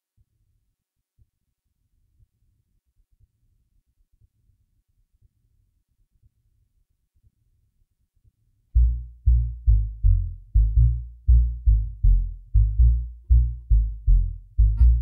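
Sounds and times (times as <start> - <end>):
deep booming electronic drum beat: 8.8 - 15.0.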